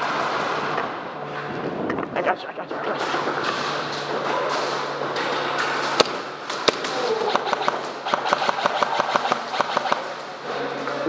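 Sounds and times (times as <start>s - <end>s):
steady background noise: 0.0s - 11.0s
airsoft guns firing: 3.0s - 10.4s.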